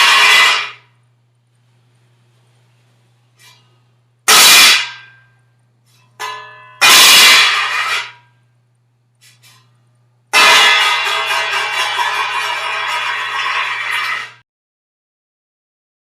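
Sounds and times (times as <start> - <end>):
short ringing clang: 6.2 - 8.4, 10.4 - 14.4
metal utensils clattering: 10.4 - 14.4.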